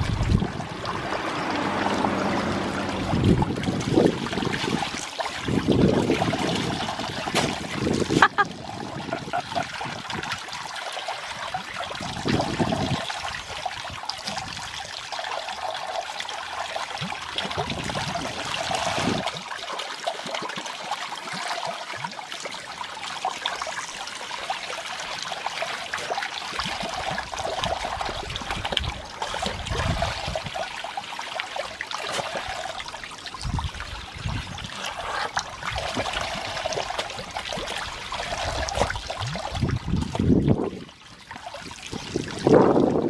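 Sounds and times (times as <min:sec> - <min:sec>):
low rumbles: 0:00.0 - 0:04.6
water splashing from a hose: 0:00.0 - 0:43.0.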